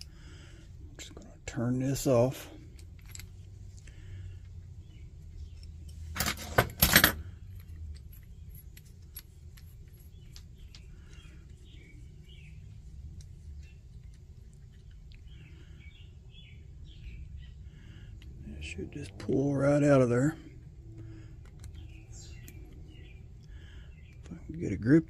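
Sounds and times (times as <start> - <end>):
low steady hum: 0.0 - 25.0
metal tools clattering: 5.5 - 11.3.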